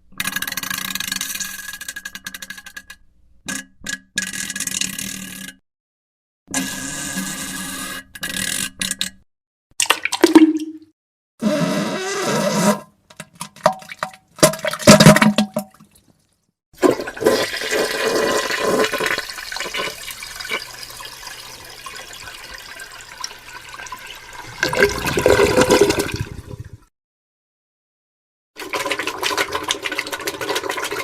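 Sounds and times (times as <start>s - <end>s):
wet fart noises: 16.8s - 20.6s, 24.5s - 26.9s
toilet flushing: 16.8s - 26.9s, 28.6s - 31.0s.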